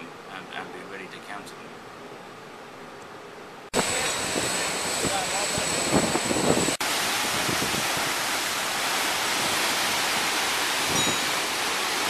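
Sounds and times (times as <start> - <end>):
steady rushing hiss: 3.7 - 12.0.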